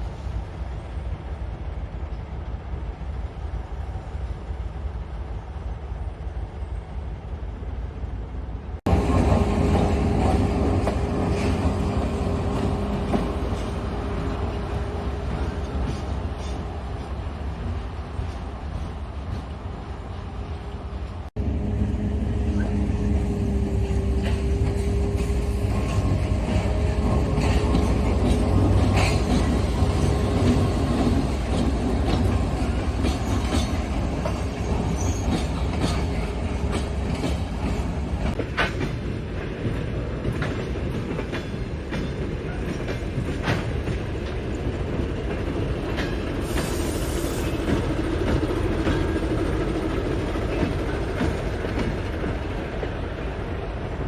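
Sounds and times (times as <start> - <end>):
train rumbling on rails: 0.0 - 54.0
wheels clacking over rail joints: 23.8 - 53.5.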